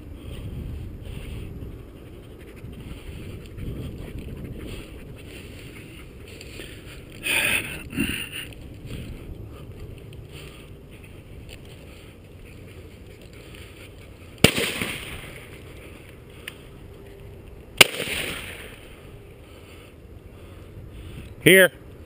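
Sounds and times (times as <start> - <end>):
shotgun shots with echo: 14.4 - 15.4, 17.8 - 18.8.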